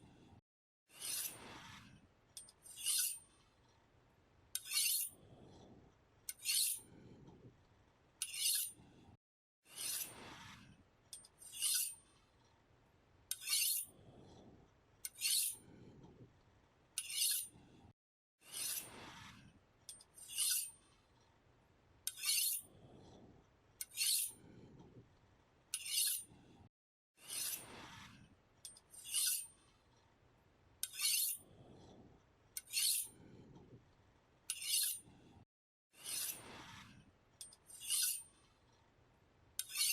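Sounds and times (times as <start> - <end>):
knife scraping on sharpener: 0.9 - 1.6, 2.4 - 3.3, 4.6 - 5.2, 6.3 - 6.9, 8.2 - 8.8, 9.7 - 10.2, 11.2 - 12.0, 13.3 - 13.9, 15.0 - 15.6, 17.0 - 17.5, 18.5 - 19.0, 19.9 - 20.8, 22.1 - 22.7, 23.8 - 24.4, 25.7 - 26.3, 27.2 - 27.7, 28.7 - 29.5, 30.8 - 31.5, 32.6 - 33.2, 34.5 - 35.1, 36.0 - 36.8, 37.4 - 38.3, 39.6 - 39.9.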